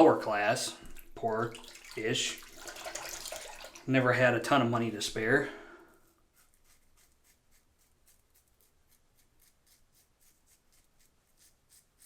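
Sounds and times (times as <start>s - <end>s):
razor scraping stubble: 5.9s - 12.0s.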